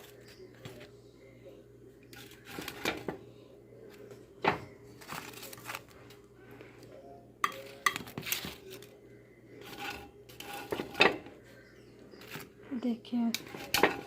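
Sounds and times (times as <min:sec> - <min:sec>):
steady low hum: 0:00.0 - 0:14.0
metal utensil clinking on pot: 0:13.4 - 0:14.0.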